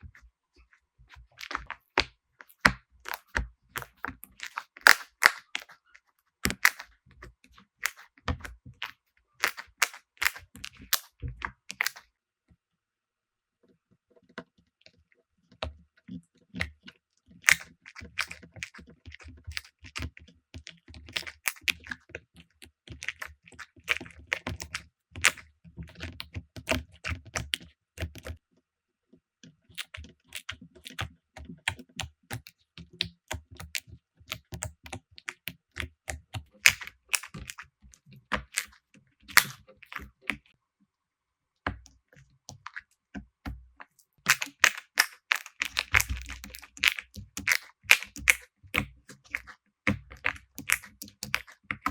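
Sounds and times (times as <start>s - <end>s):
slime squeezed with sticky clicks: 1.3s - 5.8s, 6.4s - 12.0s, 17.4s - 22.0s, 23.0s - 28.3s, 29.8s - 40.5s, 43.5s - 51.9s.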